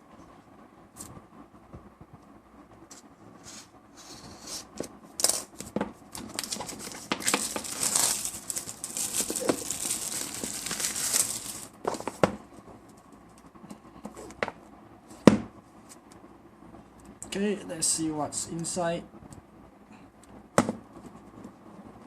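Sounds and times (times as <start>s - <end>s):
continuous crackling: 5.2s - 13.8s
packaging being torn open: 6.2s - 11.7s.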